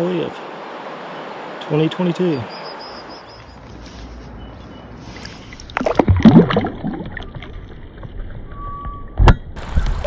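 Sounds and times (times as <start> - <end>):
wind noise on microphone: 8.4 - 10.0.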